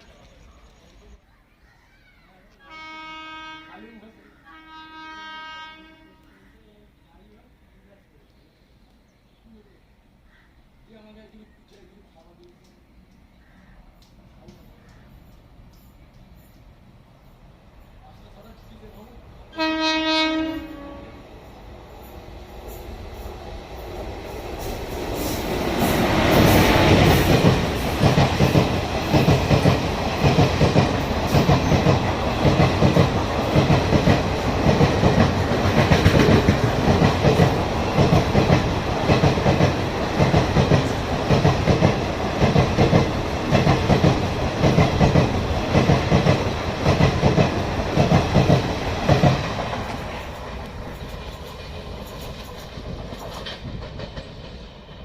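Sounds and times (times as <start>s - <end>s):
train horn: 2.6s - 6.4s, 19.5s - 21.3s
train rumbling past: 14.0s - 55.0s
train wheels clattering on rails: 22.0s - 55.0s.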